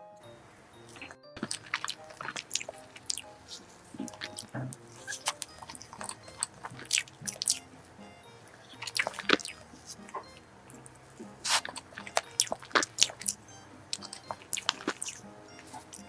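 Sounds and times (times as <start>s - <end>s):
faint background music: 0.0s - 16.0s
chewing with wet mouth smacks: 1.4s - 7.6s.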